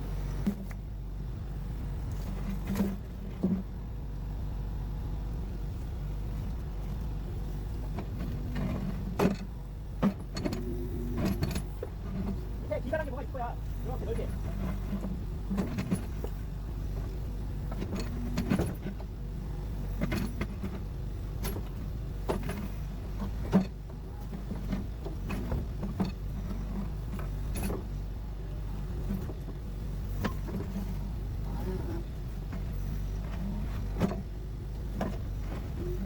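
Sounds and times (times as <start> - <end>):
steady low rumble: 0.0 - 36.0
knocks and metallic clinks: 7.9 - 28.0.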